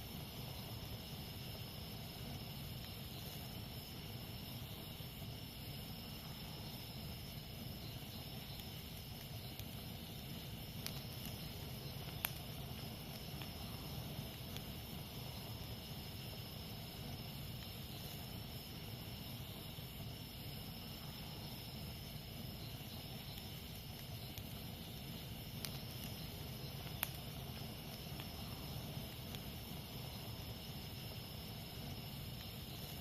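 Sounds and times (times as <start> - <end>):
campfire crackling and popping: 0.0 - 33.0
jungle insects chorus: 0.0 - 33.0.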